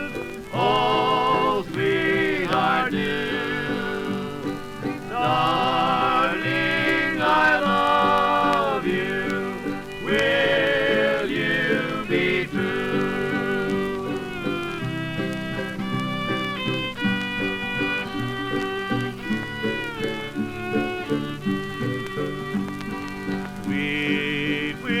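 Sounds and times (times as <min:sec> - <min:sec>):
banjo: 0:00.0 - 0:25.0
fiddle melody: 0:00.0 - 0:25.0
plucked guitar: 0:00.0 - 0:25.0.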